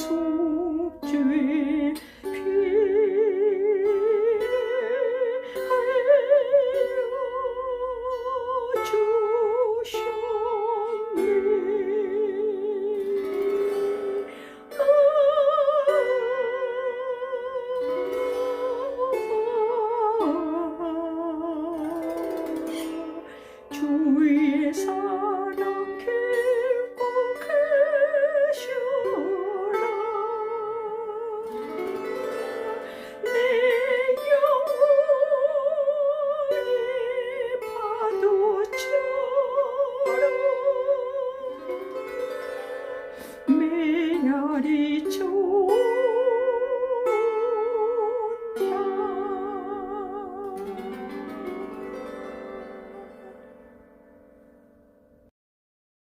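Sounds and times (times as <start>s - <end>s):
person singing with vibrato: 0.0s - 53.7s
plucked lyre harp melody: 0.0s - 55.3s.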